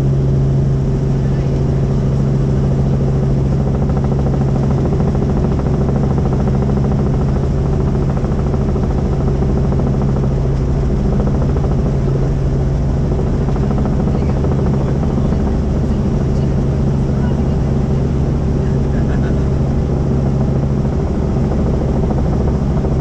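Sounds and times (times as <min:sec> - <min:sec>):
helicopter engine and rotor: 0:00.0 - 0:23.0.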